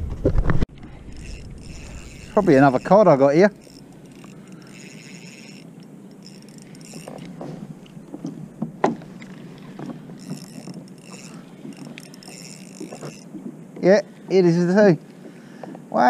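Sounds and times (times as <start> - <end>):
fishing reel whirring: 0.8 - 8.3, 9.0 - 13.4
knocks against a kayak: 8.2 - 9.1.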